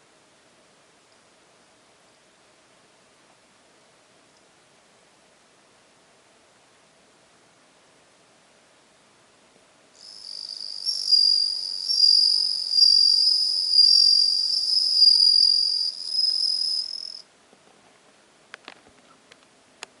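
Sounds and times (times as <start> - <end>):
cricket trilling: 10.0 - 17.2.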